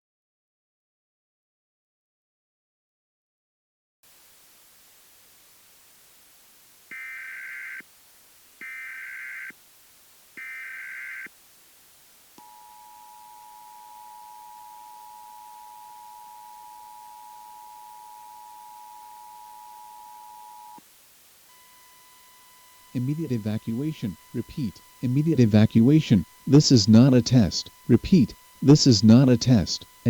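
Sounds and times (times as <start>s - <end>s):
two-tone attention signal: 21.5s - 30.0s
screechy data tones: 21.6s - 30.0s.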